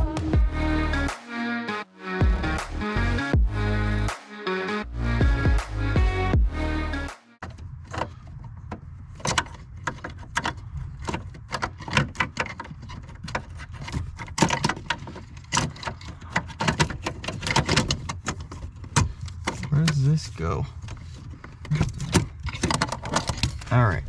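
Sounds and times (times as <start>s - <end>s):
metallic clicks and rattles: 7.4s - 20.1s, 20.8s - 23.8s.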